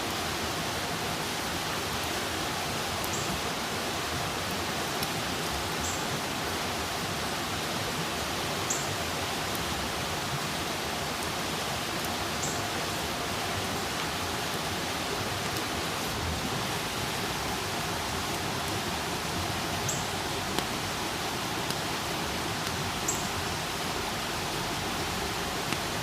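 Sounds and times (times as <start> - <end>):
campfire hissing: 0.0 - 26.0
fire crackles and pops: 15.3 - 24.2, 24.8 - 26.0.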